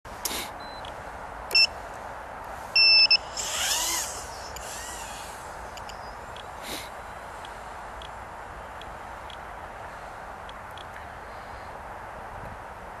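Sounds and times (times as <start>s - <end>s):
electronic beeps: 2.8s - 3.3s, 5.8s - 6.2s
drone motors whining: 2.8s - 6.2s.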